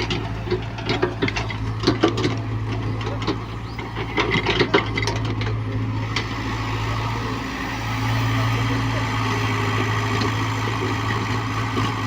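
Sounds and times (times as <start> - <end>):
excavator bucket clunking and scraping: 0.0 - 6.3
excavator diesel engine running: 0.0 - 12.0.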